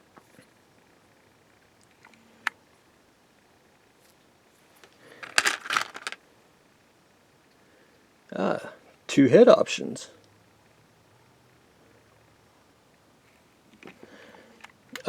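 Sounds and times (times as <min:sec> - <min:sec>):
packaging crackling and rustling: 0:04.8 - 0:06.2.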